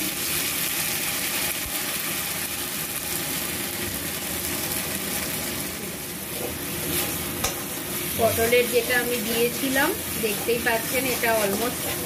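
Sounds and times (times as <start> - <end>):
paste sizzling in hot oil: 0.0 - 12.0.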